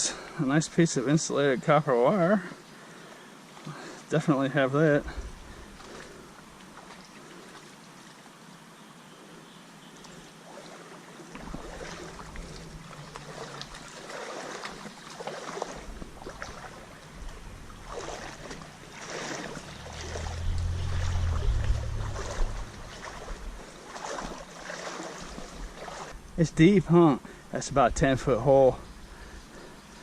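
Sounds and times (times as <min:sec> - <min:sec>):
water splashing from wading: 0:10.3 - 0:26.2
low rumble on microphone: 0:15.9 - 0:23.8.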